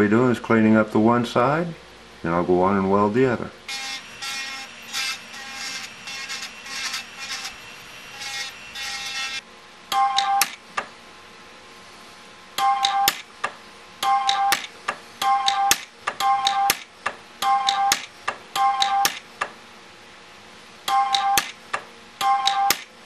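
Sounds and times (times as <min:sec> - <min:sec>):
rotary tool grinding metal: 0:03.7 - 0:09.4.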